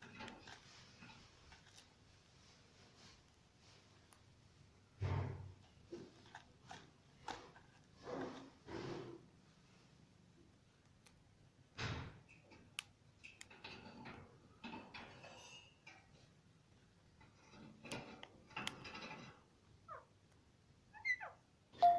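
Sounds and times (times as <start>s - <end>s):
parrots chirping: 20.9s - 21.4s.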